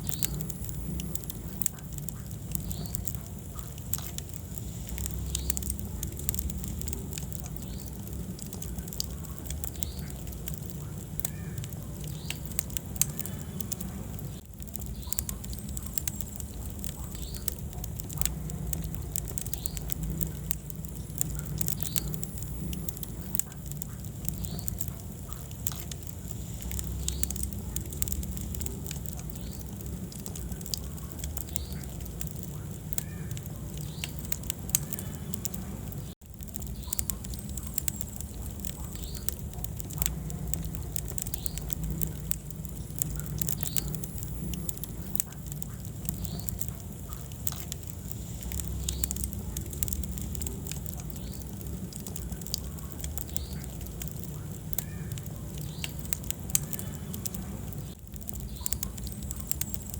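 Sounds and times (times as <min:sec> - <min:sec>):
fire crackling and popping: 0:00.0 - 0:59.9
low fire rumble: 0:00.0 - 0:59.9.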